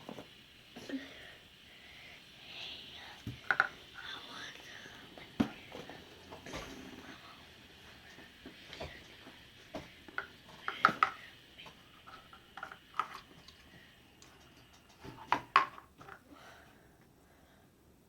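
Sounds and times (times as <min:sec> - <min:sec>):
plastic tools tapping on tabletop: 0:03.3 - 0:03.8, 0:09.8 - 0:11.2, 0:15.1 - 0:16.2.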